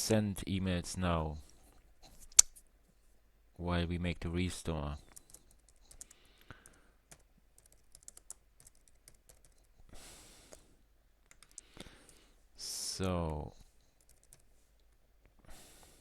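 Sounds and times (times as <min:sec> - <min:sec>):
computer keyboard typing: 0:05.0 - 0:09.8, 0:11.3 - 0:12.2, 0:14.0 - 0:14.5.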